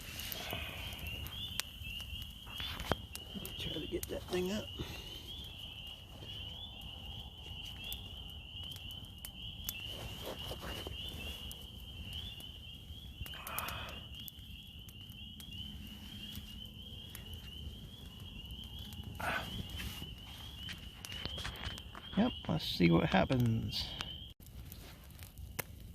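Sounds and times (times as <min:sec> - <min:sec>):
faint crackling clicks: 0:00.0 - 0:03.6
small animals chorus calling: 0:10.9 - 0:21.5.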